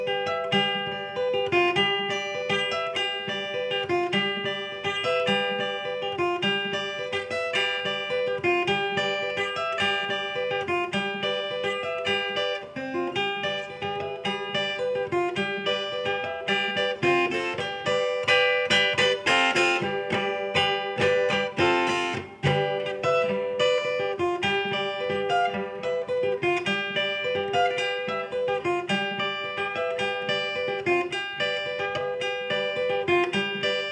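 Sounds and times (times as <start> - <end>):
acoustic guitar picked melody: 0.0 - 33.9
strummed guitar chords: 0.0 - 33.9.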